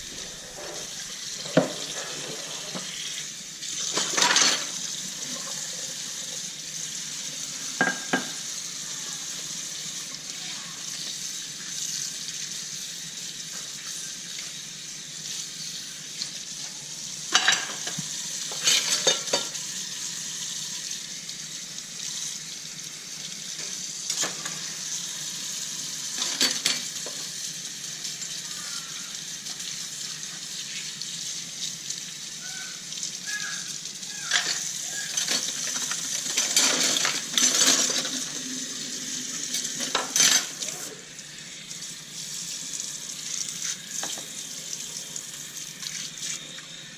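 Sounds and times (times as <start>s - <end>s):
tap water running into sink: 0.0s - 14.6s, 15.2s - 46.8s
dishes clinking: 3.9s - 4.8s, 7.8s - 8.4s, 17.3s - 19.6s, 26.2s - 27.2s, 34.2s - 38.3s, 39.8s - 40.6s.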